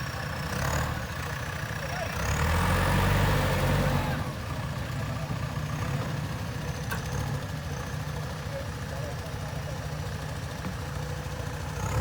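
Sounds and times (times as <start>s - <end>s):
diesel engine running at low revs: 0.0s - 12.0s.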